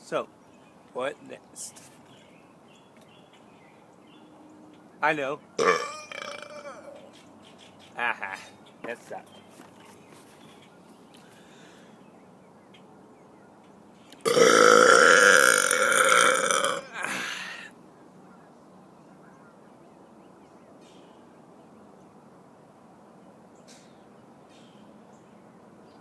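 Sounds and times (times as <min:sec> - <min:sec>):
man belching: 0:05.6 - 0:07.0, 0:14.2 - 0:17.7.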